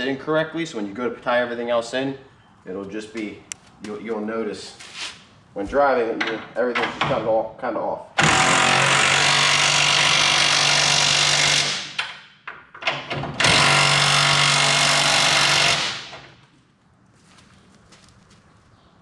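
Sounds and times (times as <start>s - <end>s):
power tool running: 8.2s - 11.9s, 13.4s - 16.1s.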